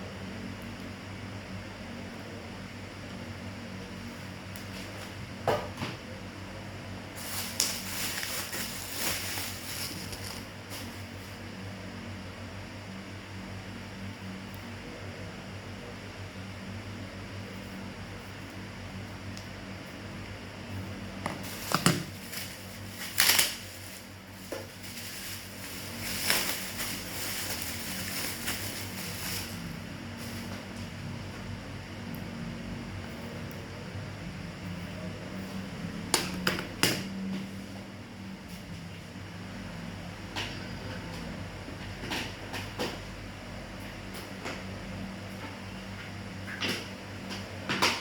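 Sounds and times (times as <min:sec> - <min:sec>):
steady low hum: 0:00.0 - 0:47.8
clicks and knocks of packaging: 0:07.2 - 0:10.8, 0:21.3 - 0:23.7
rustling: 0:07.2 - 0:11.0
packaging crinkling rustles: 0:07.2 - 0:11.4, 0:21.3 - 0:30.6.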